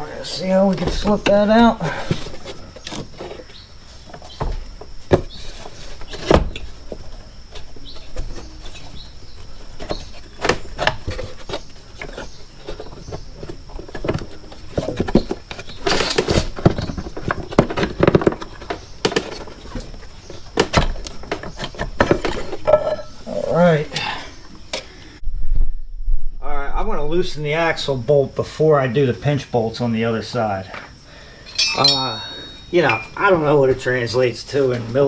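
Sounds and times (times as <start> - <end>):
metal parts clattering: 31.4 - 33.5.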